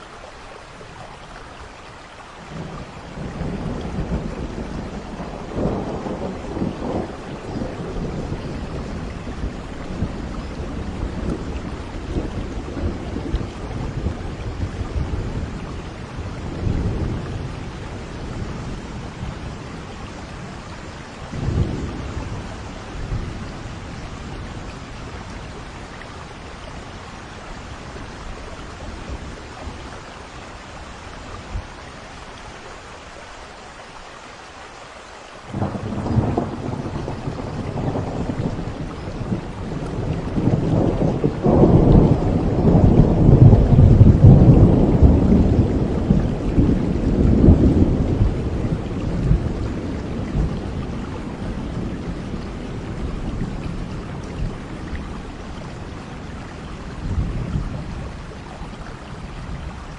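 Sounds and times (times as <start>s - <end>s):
steady rain falling: 0.0s - 59.9s
rolling thunder: 2.5s - 30.0s, 35.5s - 58.6s
loud thunderclap: 2.6s - 15.6s, 21.4s - 23.4s, 35.5s - 54.6s.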